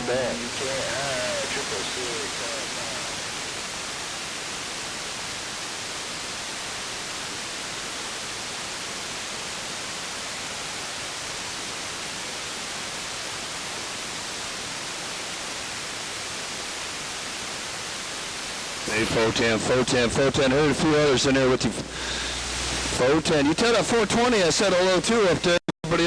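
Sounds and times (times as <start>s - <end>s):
radio static hiss: 0.0s - 6.7s, 18.3s - 26.0s.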